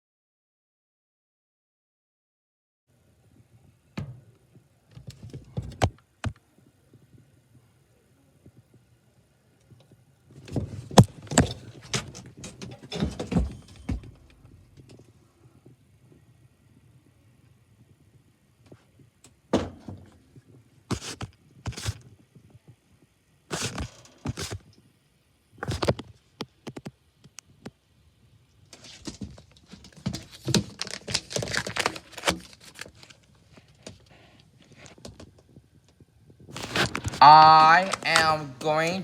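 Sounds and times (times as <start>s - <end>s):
rustling and clattering: 10.3s - 15.1s, 19.6s - 22.5s, 23.5s - 24.7s, 28.7s - 37.2s
thunks and knocks: 10.5s - 14.4s, 19.5s - 20.2s.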